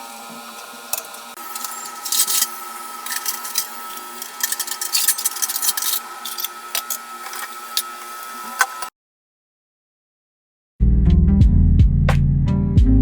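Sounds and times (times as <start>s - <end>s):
objects clicking and clattering: 0.9s - 8.9s.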